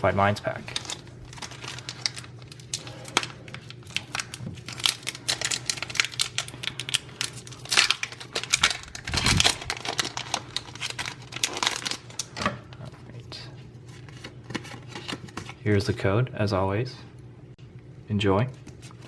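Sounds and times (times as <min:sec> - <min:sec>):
foil wrapper tearing and crinkling: 0:00.4 - 0:12.4.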